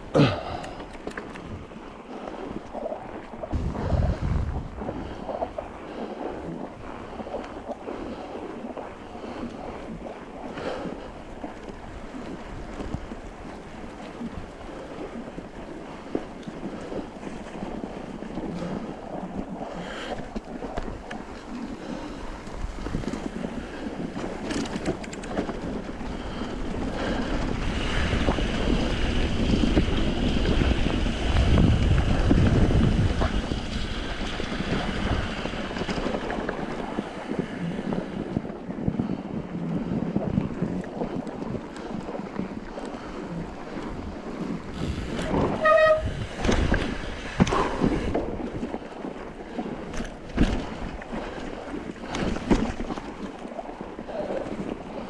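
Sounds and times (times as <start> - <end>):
bike tyres crunching through snow: 0.0 - 55.0
wind buffeting microphone: 0.0 - 55.0.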